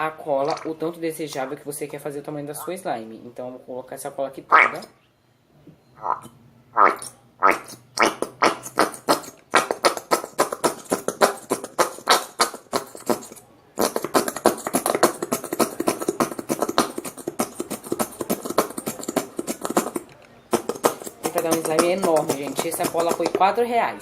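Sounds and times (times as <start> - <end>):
glue bottle spluttering squirts: 0.4 - 1.4, 6.1 - 23.4.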